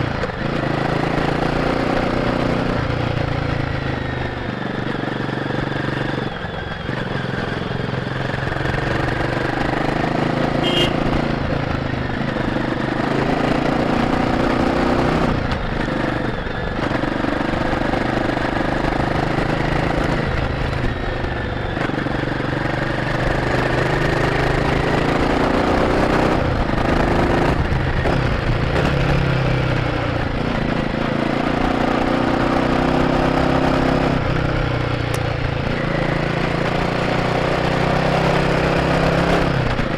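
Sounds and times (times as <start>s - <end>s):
motorcycle engine revving: 0.0s - 39.9s
wind and road noise: 0.0s - 39.9s.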